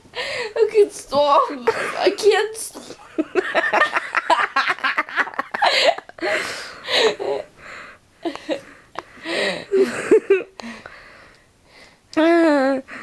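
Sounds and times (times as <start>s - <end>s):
gasping breaths: 5.7s - 10.0s.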